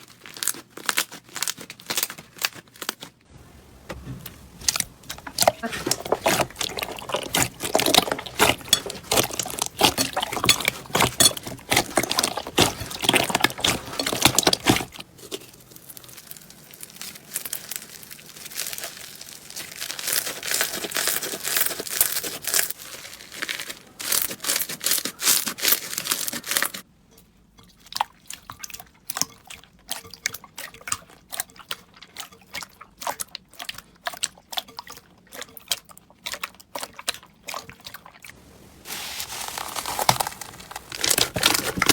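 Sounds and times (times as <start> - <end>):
wet squelching: 3.3 - 26.8, 27.8 - 41.9
slime crackling and popping: 4.6 - 26.8, 38.8 - 41.9.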